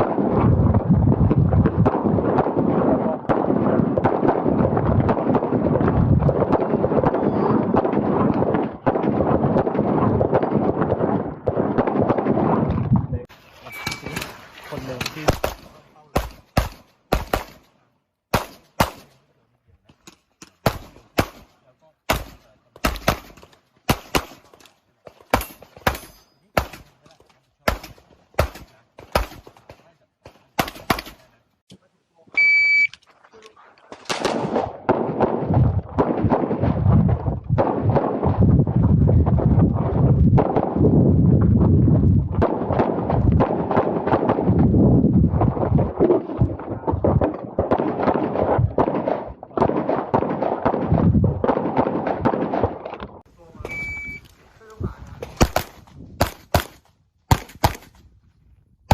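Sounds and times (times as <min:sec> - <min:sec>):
rapid handgun shots: 0:01.6 - 0:12.7, 0:14.2 - 0:19.3, 0:20.4 - 0:31.4, 0:33.9 - 0:36.8, 0:37.6 - 0:38.5, 0:42.4 - 0:44.6, 0:47.2 - 0:52.9, 0:55.2 - 0:58.0
handgun shots with echoes: 0:25.3 - 0:26.9.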